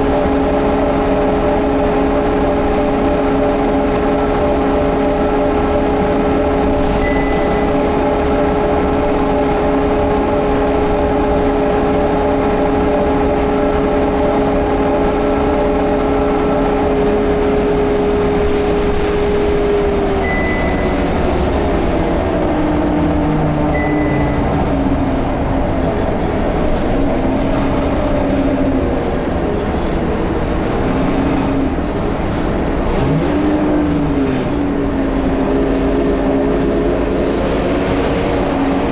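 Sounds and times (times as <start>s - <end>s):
bus engine rumble: 0.0s - 38.9s
bus whine: 0.0s - 38.9s
high whistle: 20.1s - 24.5s.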